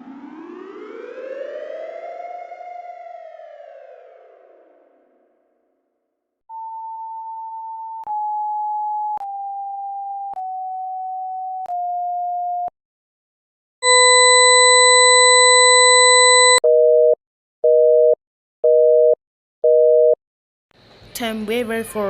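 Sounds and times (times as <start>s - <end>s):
telephone busy signal: 6.5s - 12.7s, 13.8s - 20.2s
electronic tone stepping down: 13.8s - 16.6s.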